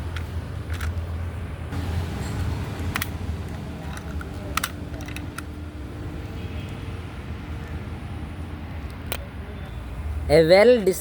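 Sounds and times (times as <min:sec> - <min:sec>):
toy car clicks: 0:00.1 - 0:01.1, 0:02.9 - 0:05.6.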